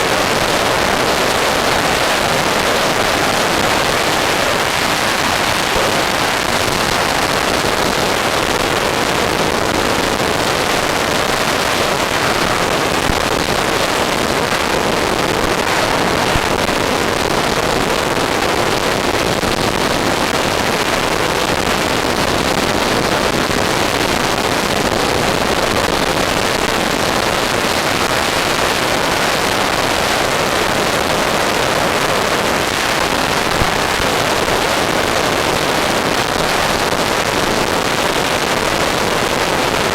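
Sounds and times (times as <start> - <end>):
steady rushing hiss: 0.0 - 39.9.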